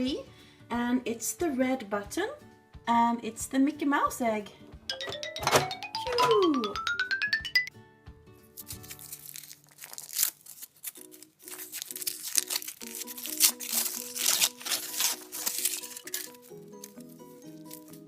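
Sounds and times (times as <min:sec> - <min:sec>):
light background music: 0:00.0 - 0:18.0
foil wrapper crinkling and tearing: 0:08.6 - 0:18.0.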